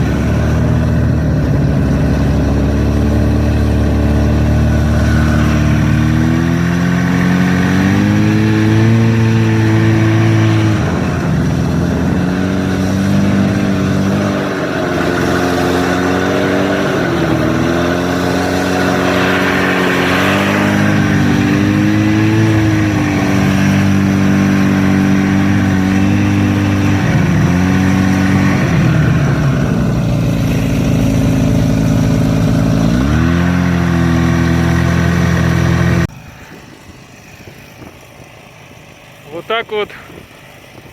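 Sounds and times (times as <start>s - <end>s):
snowmobile engine revving: 0.0s - 40.9s.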